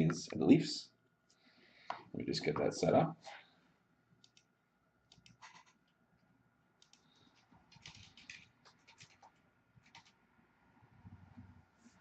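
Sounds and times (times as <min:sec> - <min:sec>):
hands clicking and rustling at desk: 0:06.8 - 0:10.2.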